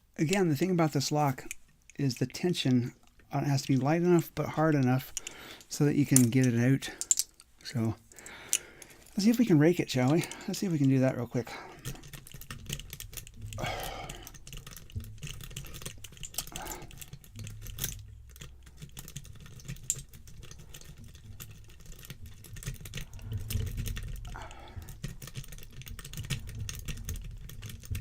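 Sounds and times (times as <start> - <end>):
lock pick clicking in padlock: 11.9 - 27.9.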